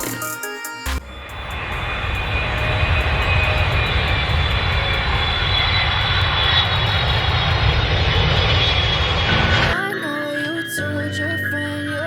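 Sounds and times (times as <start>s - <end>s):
aeroplane engine running: 1.0s - 9.8s.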